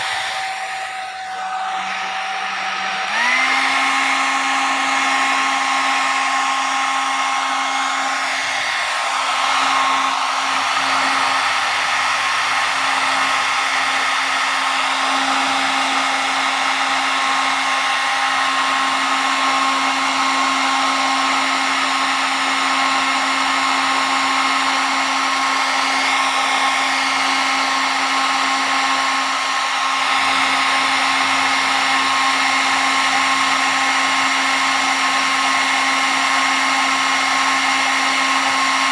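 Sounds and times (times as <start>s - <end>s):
hair dryer blowing: 0.0s - 38.9s.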